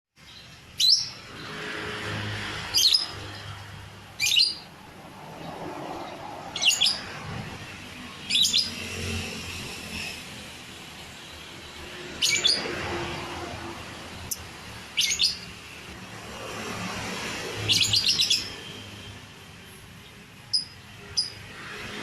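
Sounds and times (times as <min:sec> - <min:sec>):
bird giving shrill calls: 0:04.2 - 0:04.7, 0:08.2 - 0:09.3, 0:15.0 - 0:15.6, 0:17.7 - 0:18.8.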